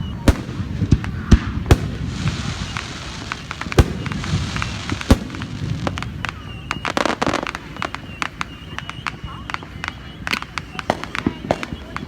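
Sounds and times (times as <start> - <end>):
fireworks booms: 0.0 - 9.0
fireworks pops and crackles: 0.0 - 12.0.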